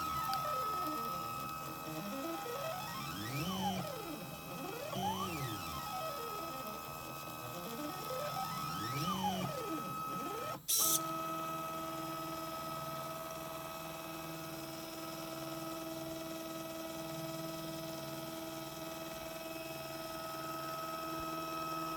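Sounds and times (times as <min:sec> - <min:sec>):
stepper motors whining: 0:00.0 - 0:11.0.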